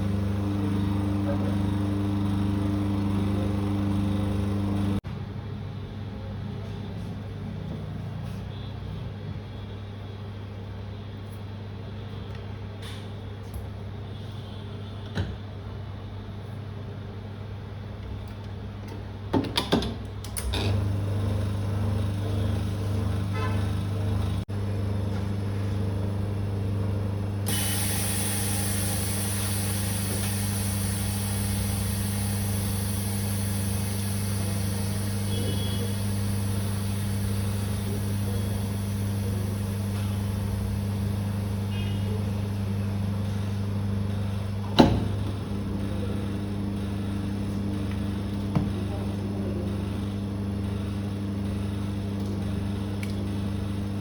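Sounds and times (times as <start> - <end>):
electrical hum: 0.0 - 5.0, 20.2 - 54.0.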